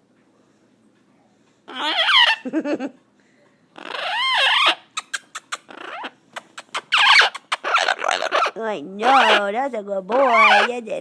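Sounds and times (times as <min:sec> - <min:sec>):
bird raspy sound: 0:01.7 - 0:02.4, 0:03.8 - 0:09.5, 0:10.1 - 0:10.8.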